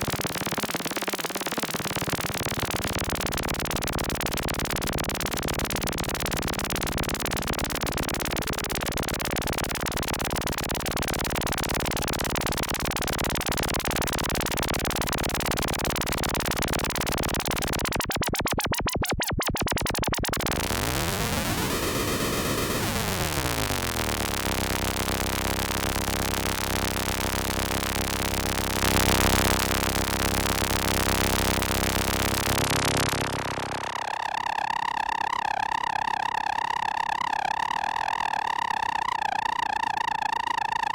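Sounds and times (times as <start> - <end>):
stuttering synth pulse: 0.0 - 36.0
noisy synthesizer drone: 1.9 - 35.1
synth pitch sweep: 15.9 - 26.7.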